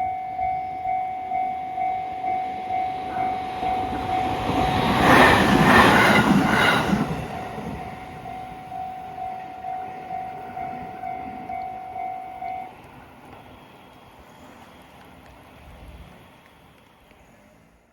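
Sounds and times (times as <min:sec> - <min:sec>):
crossing warning bell ringing: 0:00.0 - 0:13.8
train wheel clatter: 0:03.1 - 0:08.6.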